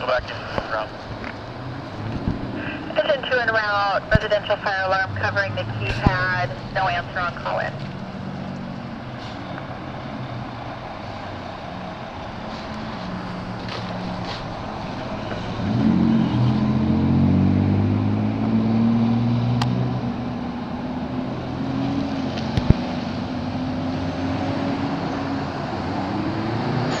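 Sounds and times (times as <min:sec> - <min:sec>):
large truck engine running: 0:00.0 - 0:18.3.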